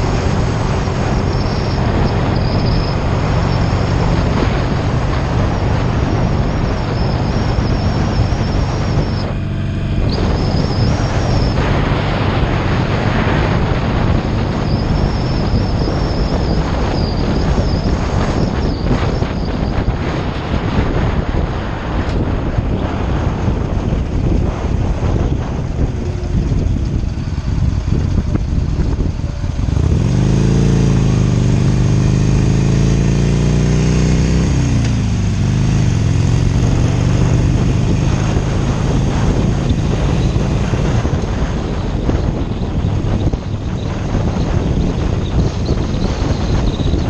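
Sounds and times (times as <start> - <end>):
motorcycle engine and road noise: 0.0 - 47.0
wind rushing over microphone: 0.0 - 47.0
loud engine note rising: 24.4 - 43.4.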